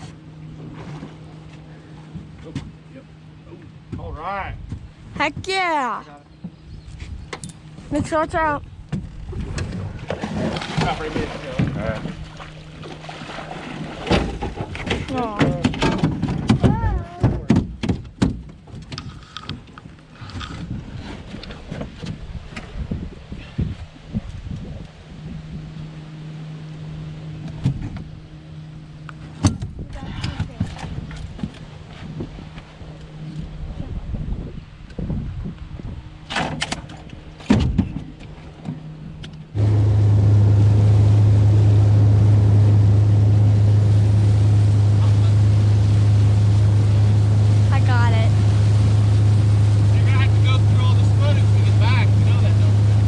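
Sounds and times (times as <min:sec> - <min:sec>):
boat motor running: 0:00.0 - 0:53.0
sharp knocks and thumps: 0:14.0 - 0:19.7, 0:36.3 - 0:38.8
high wavering whine: 0:39.5 - 0:53.0.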